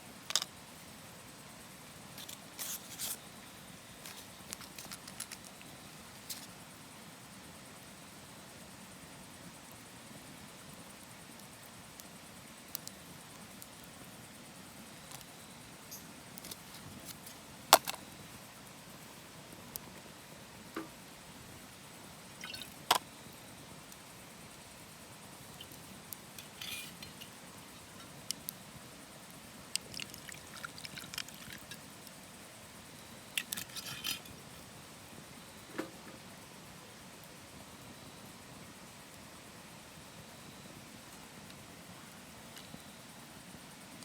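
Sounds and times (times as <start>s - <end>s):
background hiss: 0.0s - 44.0s
objects clicking and rattling: 4.1s - 5.6s, 29.8s - 31.8s, 33.4s - 34.4s.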